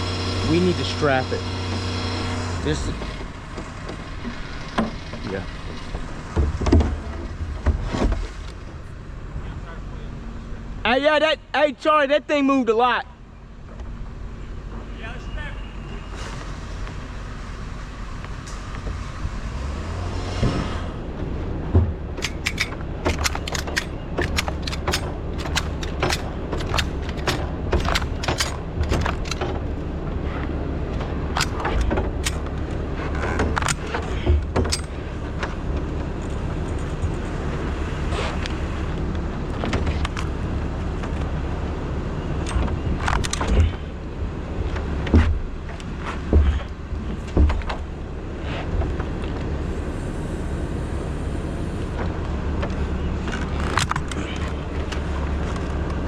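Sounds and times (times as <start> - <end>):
sharp metallic clicks: 22.2 - 29.6.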